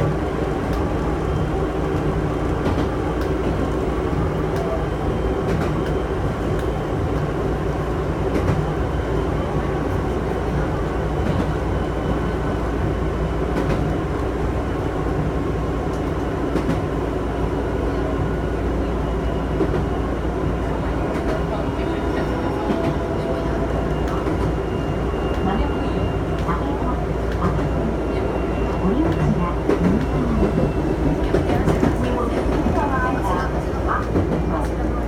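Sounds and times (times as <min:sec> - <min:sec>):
train running hum: 0:00.0 - 0:35.0.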